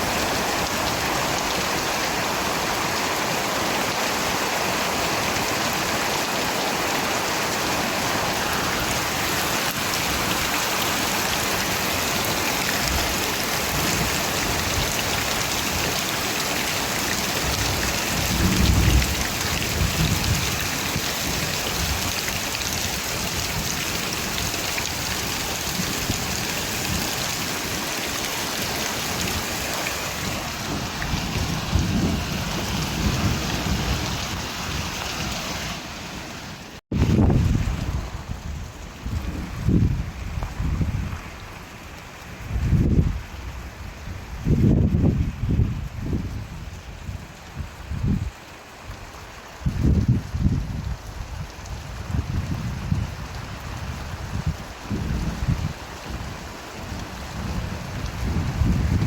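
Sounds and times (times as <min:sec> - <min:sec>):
steady rain falling: 0:00.0 - 0:59.0
thunder rumbling: 0:17.4 - 0:22.1, 0:29.0 - 0:35.3.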